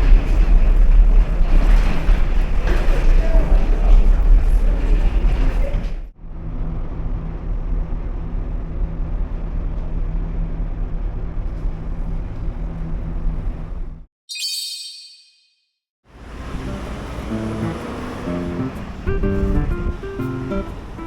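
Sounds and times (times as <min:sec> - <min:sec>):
low engine rumble: 0:16.2 - 0:21.0.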